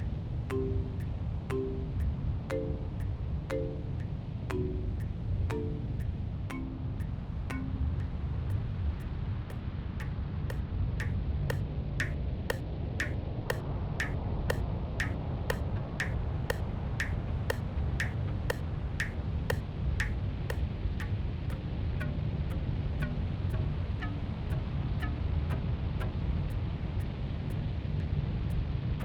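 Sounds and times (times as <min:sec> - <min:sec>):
sharp ringing ticks: 0:00.0 - 0:21.2
continuous low rumble: 0:00.0 - 0:29.0.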